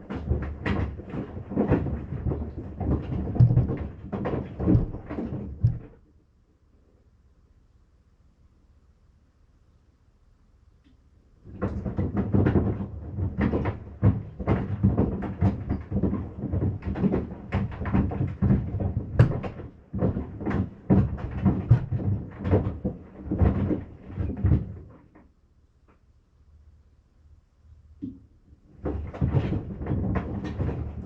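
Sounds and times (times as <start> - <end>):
washing machine running: 0.0 - 6.0, 11.4 - 24.9, 28.7 - 31.0.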